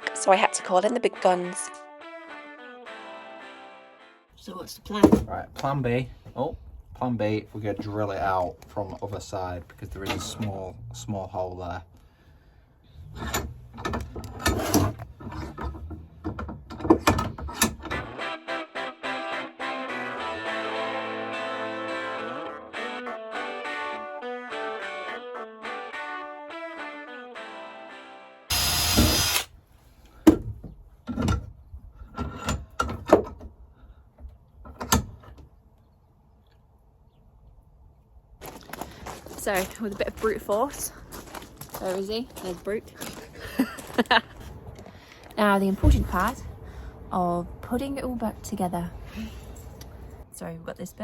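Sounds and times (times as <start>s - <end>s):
guitar music: 17.9s - 28.2s.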